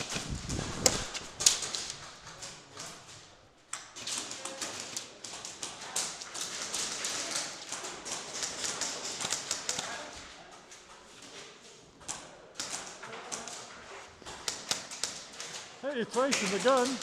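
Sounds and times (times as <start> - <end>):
pellets striking walls: 14.2 - 17.0.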